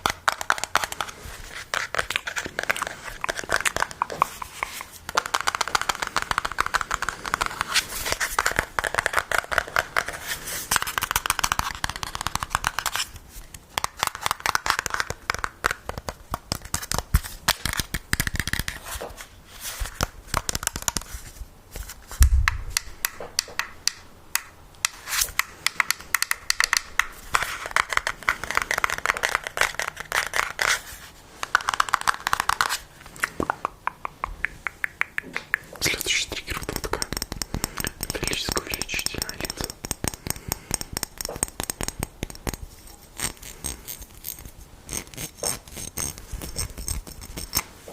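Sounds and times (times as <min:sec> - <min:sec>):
tapping and scratching on an object: 0:00.0 - 0:30.8, 0:31.4 - 0:47.9.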